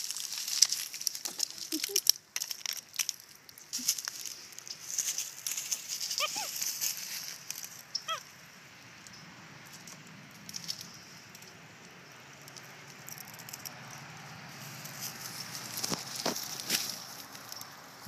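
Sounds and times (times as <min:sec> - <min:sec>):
clicking and rustling of treats: 0:00.0 - 0:08.2, 0:09.7 - 0:14.1
monkey squeaking call: 0:06.1 - 0:06.6, 0:07.9 - 0:08.3.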